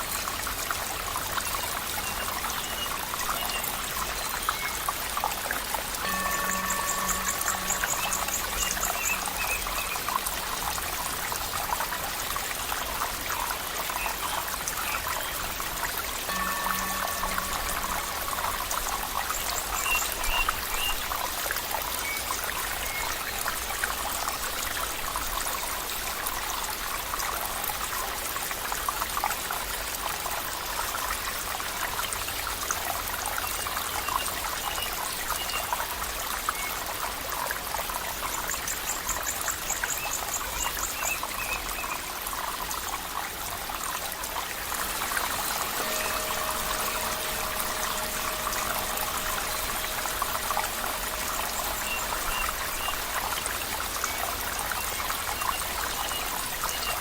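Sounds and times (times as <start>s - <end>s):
water trickling: 0.0s - 57.0s
quick ticking trill: 6.0s - 10.2s, 16.3s - 20.5s, 44.8s - 56.0s
steady low tones: 16.3s - 20.2s, 44.8s - 55.4s.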